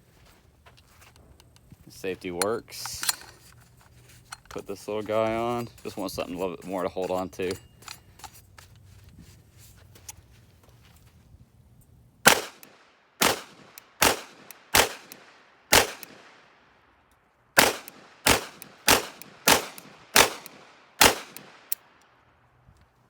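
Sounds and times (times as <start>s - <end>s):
gunshots with echo: 12.3s - 16.4s, 17.6s - 21.7s.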